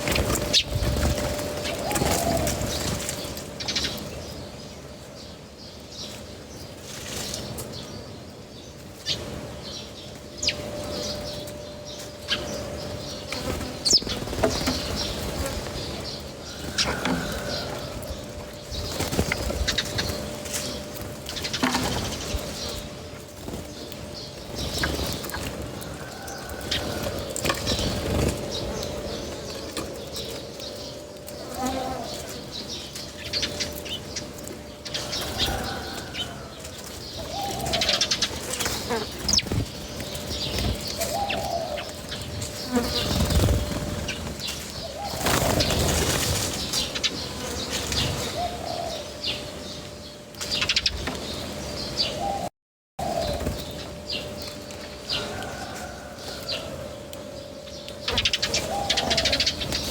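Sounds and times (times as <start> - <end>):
bird calls: 0.0 - 59.9
wing flutters: 37.4 - 48.3.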